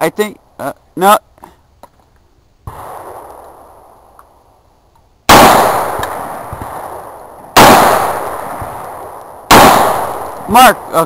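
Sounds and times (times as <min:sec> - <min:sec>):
gunshots: 0:02.7 - 0:03.8, 0:05.3 - 0:11.0.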